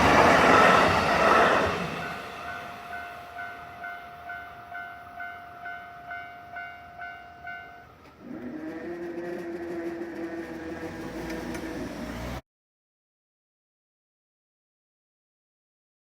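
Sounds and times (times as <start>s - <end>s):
level crossing warning bell: 0.0s - 8.1s.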